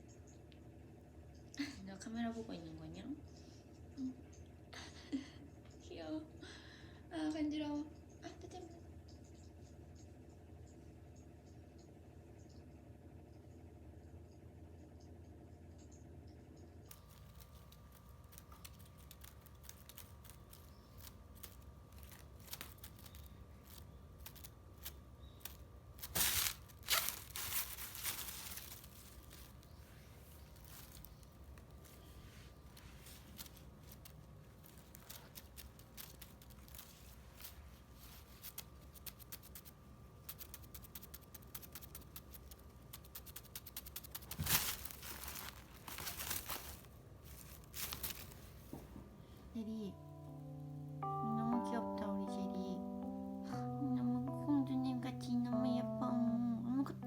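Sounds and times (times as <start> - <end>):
rustling with small clicks: 16.6 - 49.3.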